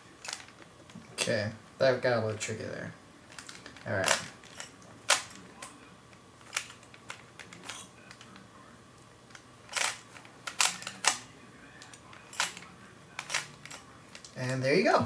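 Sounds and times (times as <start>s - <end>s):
plastic puzzle cube clacking: 9.3s - 11.2s, 11.8s - 14.6s.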